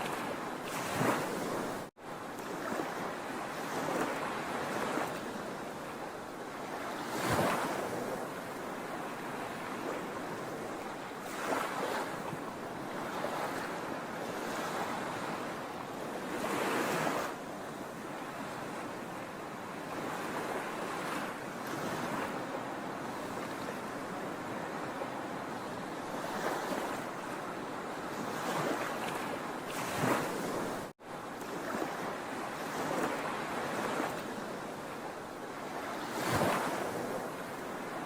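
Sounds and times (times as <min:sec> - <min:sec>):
sea waves breaking on shore: 0:00.0 - 0:38.0.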